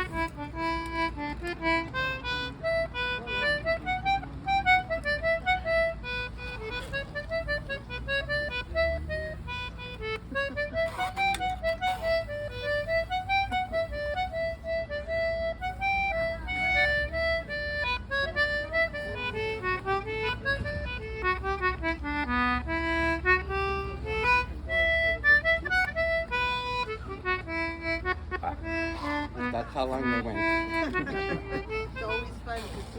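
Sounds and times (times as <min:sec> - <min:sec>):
concertina playing a tune: 0:00.0 - 0:32.6.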